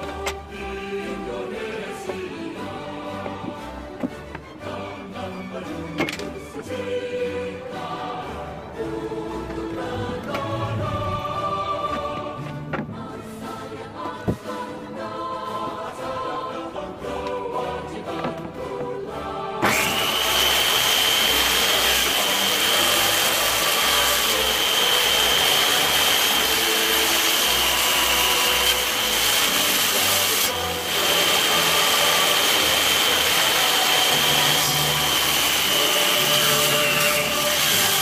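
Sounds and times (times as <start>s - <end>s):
power tool whining: 19.6s - 38.0s.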